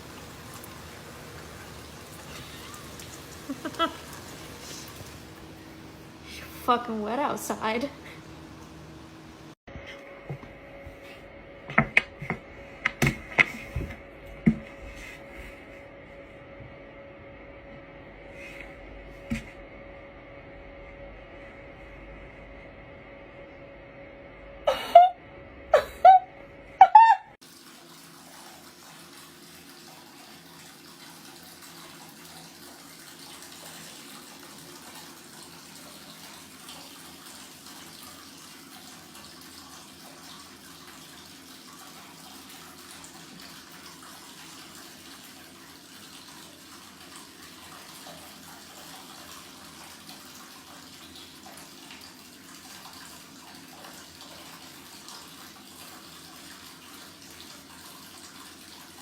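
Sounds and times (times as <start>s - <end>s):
running water: 0.0s - 9.6s, 26.8s - 59.0s.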